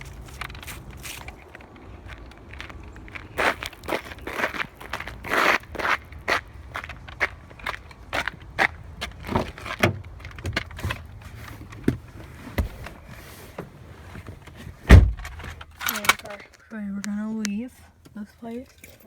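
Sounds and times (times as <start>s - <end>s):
loud thump: 14.9s - 15.6s.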